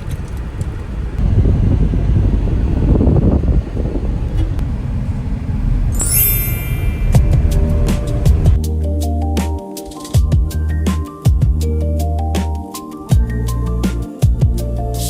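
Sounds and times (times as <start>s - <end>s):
low rumbling noise: 0.3s - 8.6s
high ringing tone: 5.9s - 8.2s.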